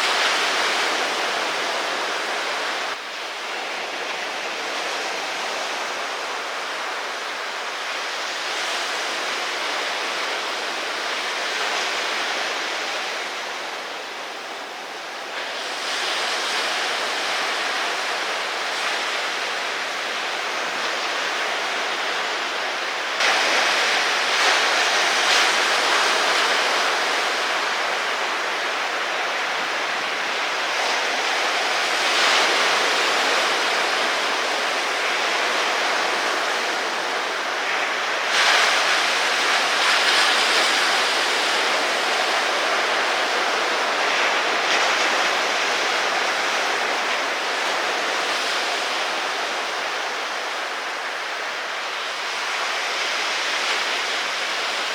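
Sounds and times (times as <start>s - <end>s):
waves breaking: 0.0s - 54.9s.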